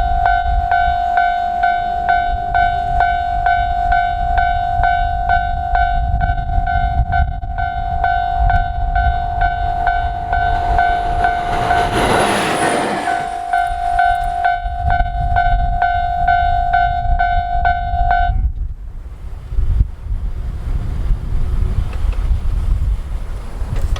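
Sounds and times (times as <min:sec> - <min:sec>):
diesel railcar passing: 0:00.0 - 0:18.1
low rumble: 0:06.6 - 0:15.8.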